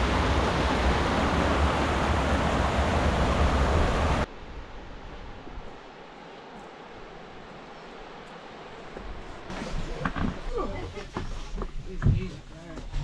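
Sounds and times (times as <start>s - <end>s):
loud rushing noise with rumble: 0.0s - 4.3s
outdoor ambience: 0.0s - 13.0s.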